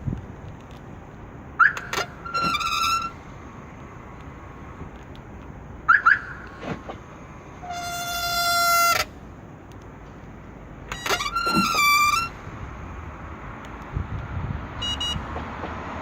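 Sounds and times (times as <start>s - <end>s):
folding side mirrors squeaking: 1.6s - 3.3s, 7.6s - 9.1s, 10.9s - 12.4s.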